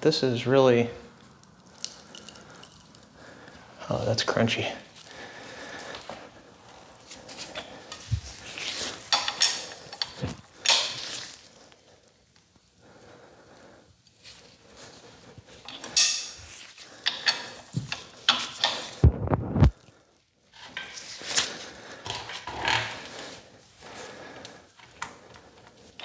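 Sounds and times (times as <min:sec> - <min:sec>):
metal tools clinking and scraping: 0:06.6 - 0:11.4, 0:15.6 - 0:19.0.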